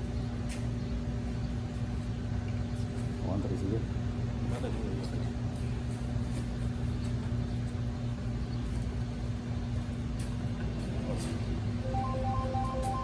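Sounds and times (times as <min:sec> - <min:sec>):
low machine hum: 0:11.4 - 0:13.0.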